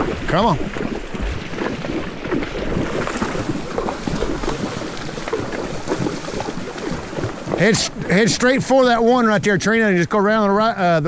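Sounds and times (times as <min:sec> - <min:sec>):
water splashing around horses' legs: 0:00.0 - 0:10.7
wind buffeting microphone: 0:00.0 - 0:10.8.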